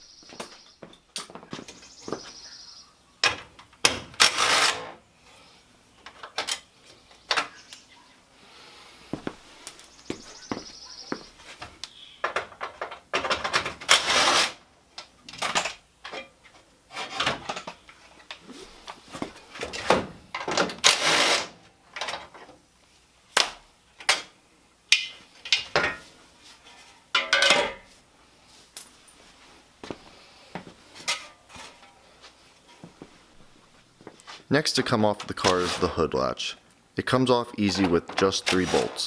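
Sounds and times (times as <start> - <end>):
metal scraping rasps: 4.2 - 5.0, 13.8 - 14.6, 20.8 - 21.6
metal car parts clanking: 26.7 - 27.9, 31.0 - 32.0.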